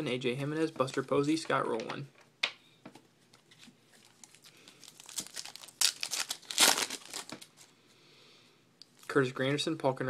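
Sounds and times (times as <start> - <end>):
wrapper tearing and crinkling: 4.0 - 7.6.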